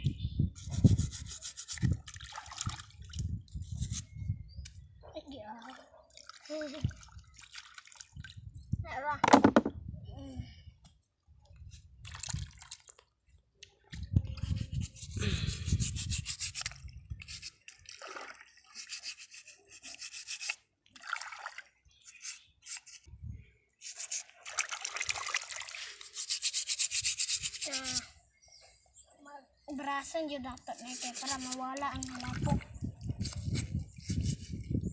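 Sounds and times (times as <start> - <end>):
brush scrubbing clam shells: 0.6 - 2.1, 14.4 - 17.7, 18.7 - 20.6, 22.0 - 23.1, 23.8 - 24.6, 25.6 - 28.1, 30.7 - 32.2, 33.1 - 34.6
shells thumping: 9.2 - 9.7.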